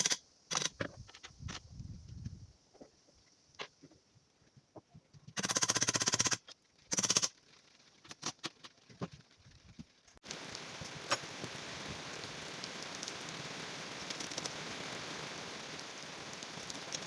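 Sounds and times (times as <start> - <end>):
rain on a surface: 6.6 - 17.0.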